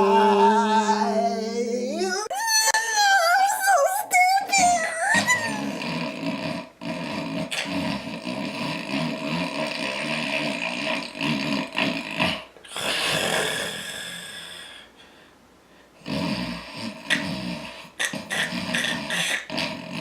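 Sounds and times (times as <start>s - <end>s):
man snoring loud: 0.0s - 2.3s, 5.2s - 14.8s, 16.0s - 20.0s.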